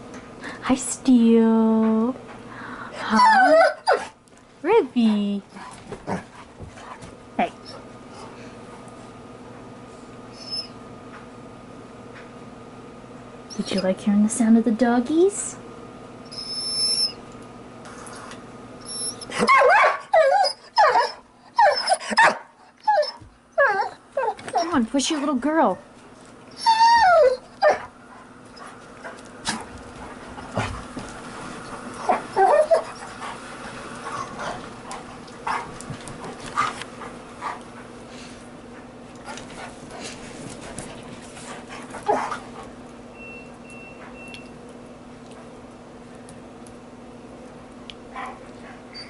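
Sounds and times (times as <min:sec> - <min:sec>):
dog whining: 0:03.0 - 0:04.2, 0:10.3 - 0:10.8, 0:16.2 - 0:17.2, 0:18.8 - 0:24.8, 0:26.5 - 0:27.9, 0:32.0 - 0:33.2, 0:42.0 - 0:42.4.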